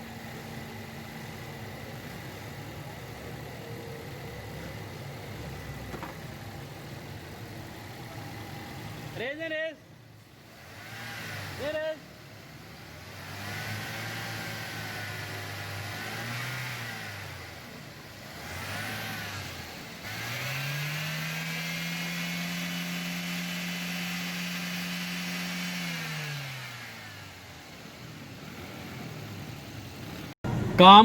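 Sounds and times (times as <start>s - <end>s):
car engine revving: 10.4s - 31.0s.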